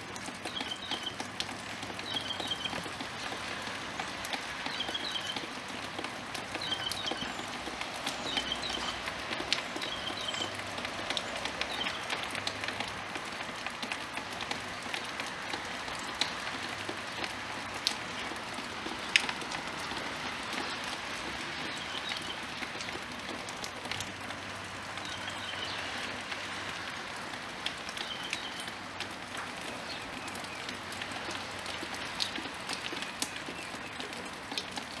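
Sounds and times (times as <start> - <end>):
small birds chirping: 0.2 - 12.6, 17.1 - 23.1, 24.9 - 26.9, 27.9 - 28.7.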